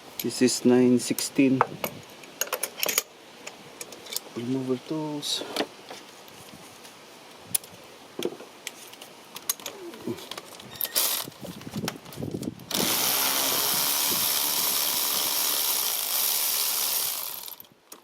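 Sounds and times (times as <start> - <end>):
power tool running: 12.7 - 17.7.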